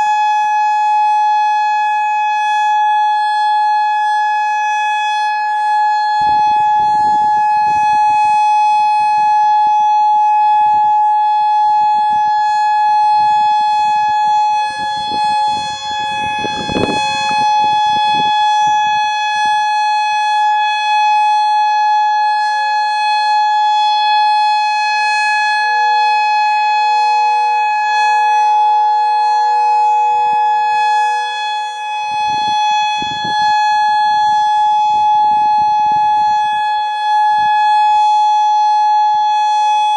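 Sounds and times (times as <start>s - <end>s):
warning siren steady tone: 0.0s - 39.9s
low rumbling on microphone: 6.1s - 8.3s, 13.1s - 19.0s.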